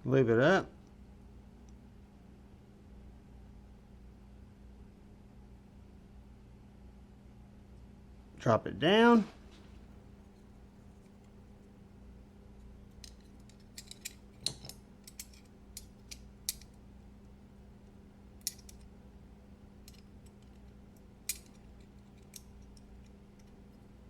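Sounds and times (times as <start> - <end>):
metal knife parts clicking: 13.0 - 16.8, 18.4 - 18.9, 19.8 - 23.8.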